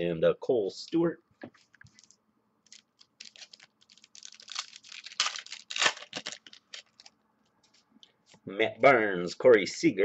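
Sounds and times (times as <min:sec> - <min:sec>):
trading cards rustling: 0:01.5 - 0:08.4.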